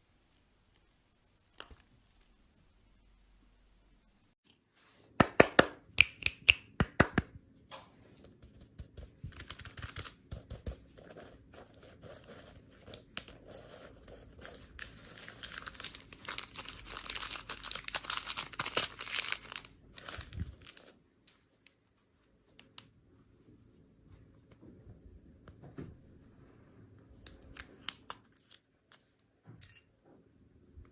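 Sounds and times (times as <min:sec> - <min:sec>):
sharp snaps: 0:05.2 - 0:07.9
packaging wrapper crinkling: 0:09.3 - 0:10.2, 0:14.3 - 0:21.0.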